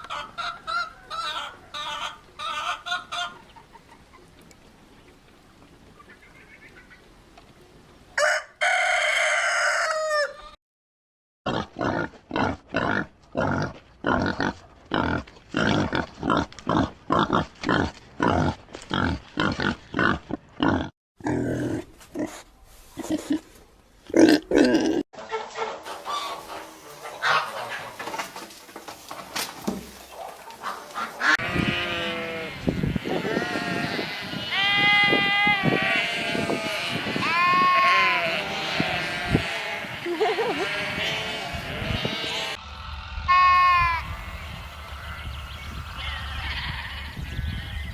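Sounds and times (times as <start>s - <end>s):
hens clucking: 0.0s - 4.4s, 25.2s - 31.8s
rooster crowing: 8.2s - 10.6s.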